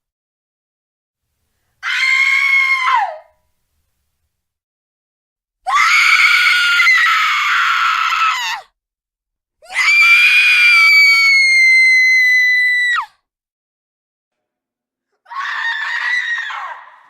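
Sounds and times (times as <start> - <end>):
woman screaming: 1.8 - 3.4, 5.7 - 8.6, 15.3 - 17.0.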